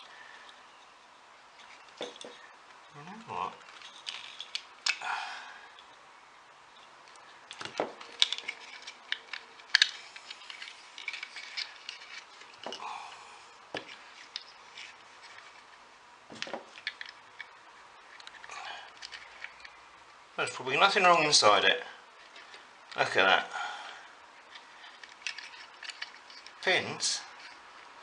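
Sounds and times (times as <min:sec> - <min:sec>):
hands handling test leads: 0:01.5 - 0:02.8, 0:03.6 - 0:05.0, 0:07.0 - 0:20.0, 0:22.1 - 0:23.1, 0:24.4 - 0:28.0.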